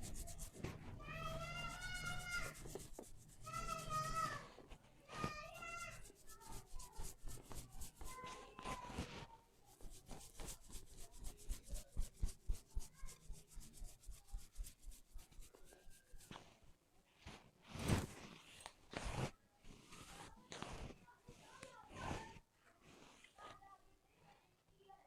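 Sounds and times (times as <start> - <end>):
hair rubbing on scalp crackling: 0.0 - 0.6, 1.2 - 4.4, 5.3 - 9.0, 9.7 - 16.4.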